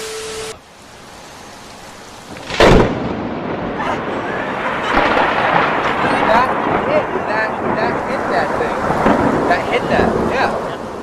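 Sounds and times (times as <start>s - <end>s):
rain: 0.0s - 11.0s
thunder crack and rumble: 2.3s - 11.0s.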